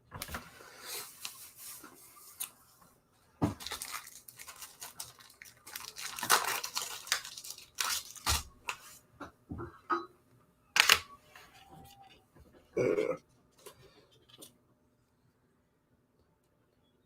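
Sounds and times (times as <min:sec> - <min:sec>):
cards and packaging crinkling: 0:03.4 - 0:09.0.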